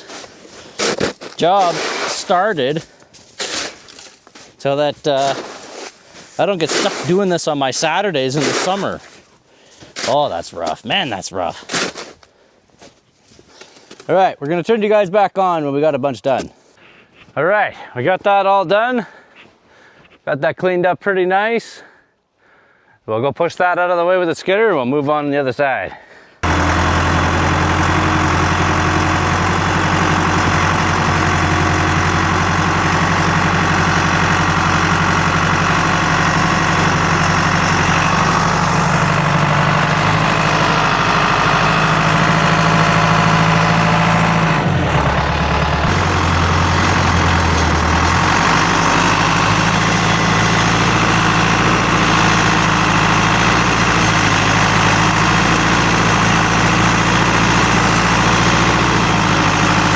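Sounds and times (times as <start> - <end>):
skidder engine running: 0.0 - 9.3, 26.4 - 59.9.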